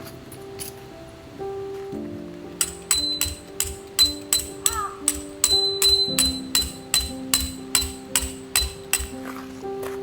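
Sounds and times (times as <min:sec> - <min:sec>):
music with held notes: 0:00.0 - 0:10.0
steady percussive beat: 0:02.6 - 0:09.2.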